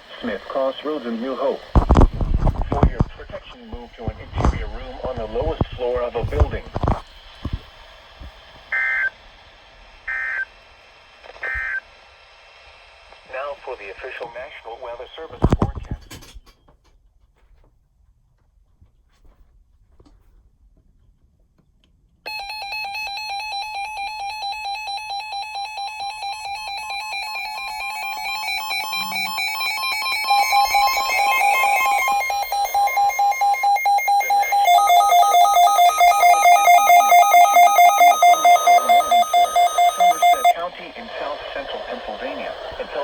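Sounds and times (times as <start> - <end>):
pulsing electronic alert chime: 26.6 - 40.5.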